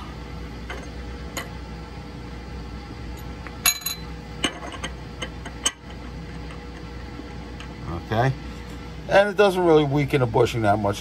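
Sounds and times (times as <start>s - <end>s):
steel parts clinking: 3.6s - 6.0s.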